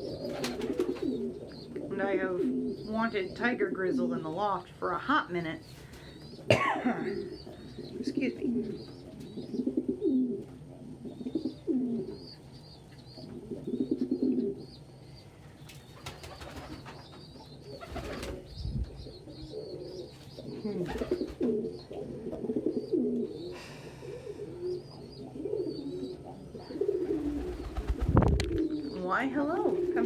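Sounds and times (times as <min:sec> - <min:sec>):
pigeons cooing: 0:00.0 - 0:04.4, 0:05.6 - 0:30.0.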